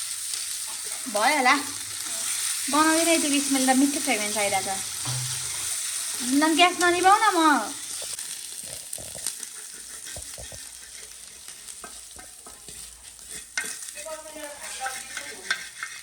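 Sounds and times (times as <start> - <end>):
food sizzling in a pan: 0.0 - 16.0
spatula scraping a pan: 0.3 - 7.1, 7.9 - 16.0.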